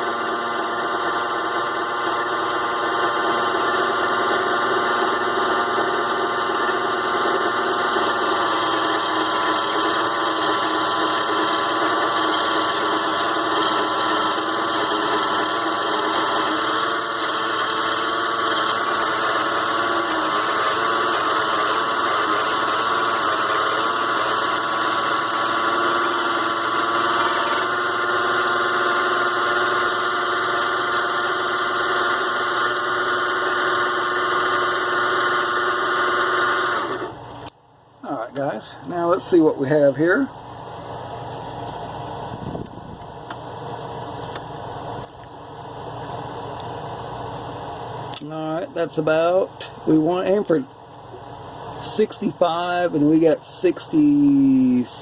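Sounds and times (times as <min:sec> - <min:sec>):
lathe tool cutting metal: 0:00.0 - 0:37.2
lathe motor whining: 0:00.0 - 0:37.5.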